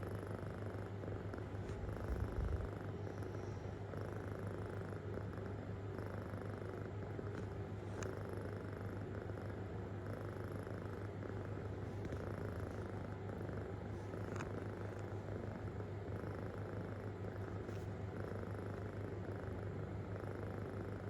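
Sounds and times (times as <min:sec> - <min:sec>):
kitten purring: 0:00.0 - 0:21.0.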